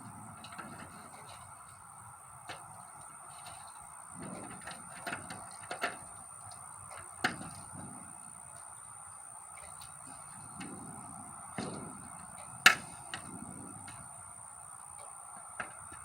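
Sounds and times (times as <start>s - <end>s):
faint high whine: 0.0s - 16.0s
steady hiss: 0.0s - 16.0s
frame parts clicking and knocking: 2.4s - 8.0s, 9.6s - 14.1s.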